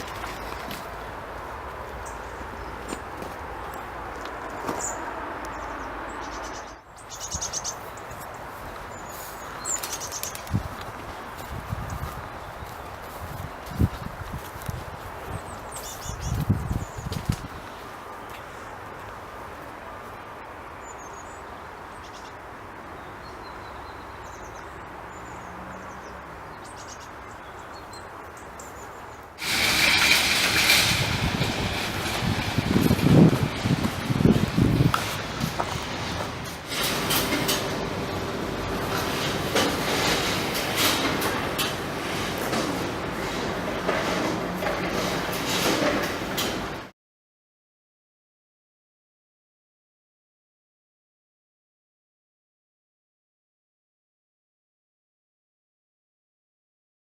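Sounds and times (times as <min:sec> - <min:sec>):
small birds chirping: 0:01.9 - 0:18.9, 0:20.8 - 0:29.4
machinery noise: 0:29.4 - 0:46.9.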